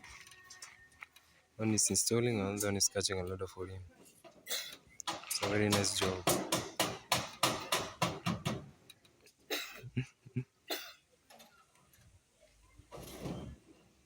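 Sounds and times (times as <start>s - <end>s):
person speaking: 5.1s - 6.4s
person coughing: 9.5s - 10.0s, 10.7s - 11.0s.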